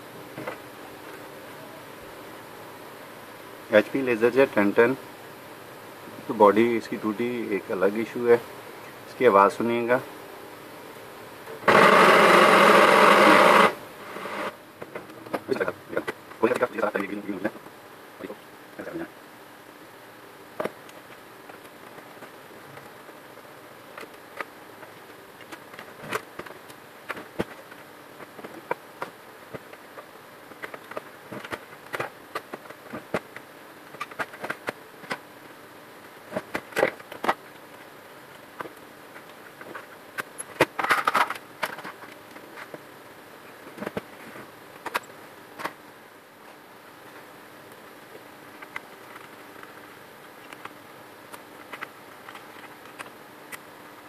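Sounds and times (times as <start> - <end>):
laser printer humming: 11.4 - 14.7.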